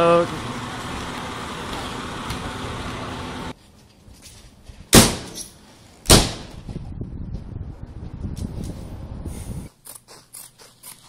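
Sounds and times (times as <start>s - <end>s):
loud slams: 4.9s - 5.4s, 6.1s - 6.6s.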